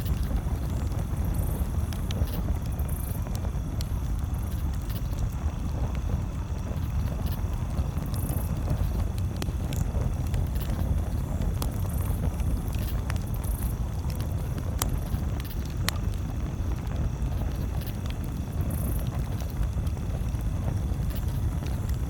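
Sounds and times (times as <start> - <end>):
campfire crackling and popping: 0.0 - 22.0
low fire rumble: 0.0 - 22.0.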